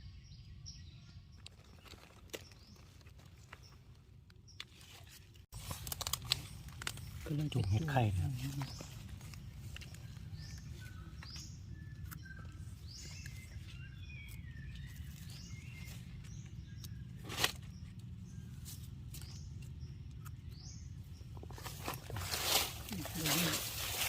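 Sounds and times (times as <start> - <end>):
wild birds chirping: 0.0 - 24.0.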